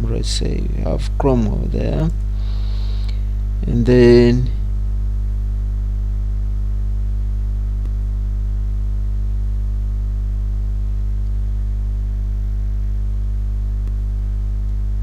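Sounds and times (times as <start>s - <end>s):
electrical mains hum: 0.0s - 15.0s
faint click: 13.8s - 14.0s.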